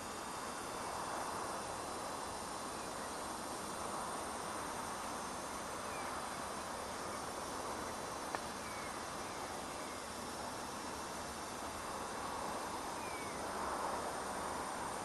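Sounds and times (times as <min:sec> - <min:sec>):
outdoor background hiss: 0:00.0 - 0:15.0
faint bird chirps: 0:08.6 - 0:10.1.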